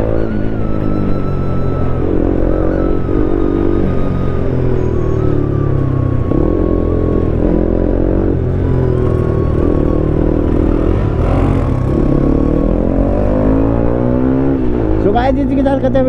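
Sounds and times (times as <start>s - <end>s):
motorcycle engine revving: 6.1s - 15.2s.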